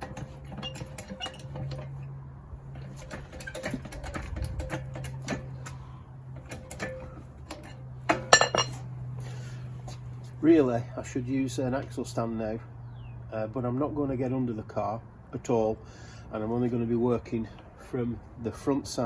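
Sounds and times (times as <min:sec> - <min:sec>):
ringing metal clank: 0:06.5 - 0:08.8.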